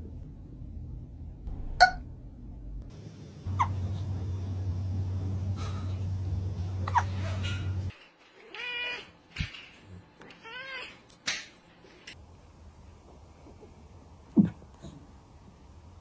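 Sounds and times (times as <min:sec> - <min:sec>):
low hum: 0:03.5 - 0:07.9
cat meowing: 0:10.3 - 0:11.0.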